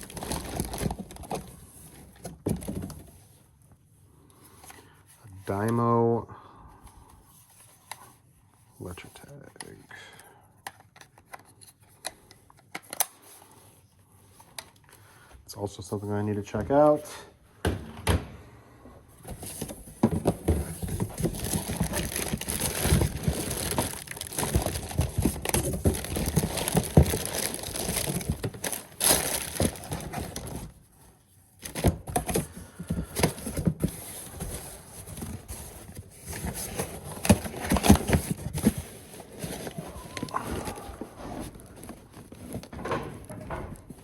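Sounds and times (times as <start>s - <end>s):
boxes and plastic items clattering: 0.0s - 3.4s, 19.2s - 44.0s.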